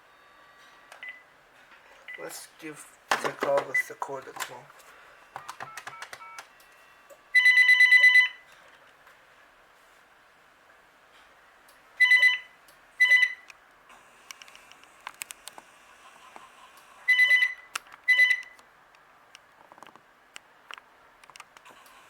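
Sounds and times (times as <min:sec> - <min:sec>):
phone ringtone beeps: 0:05.4 - 0:08.4, 0:12.0 - 0:13.4, 0:17.1 - 0:18.5.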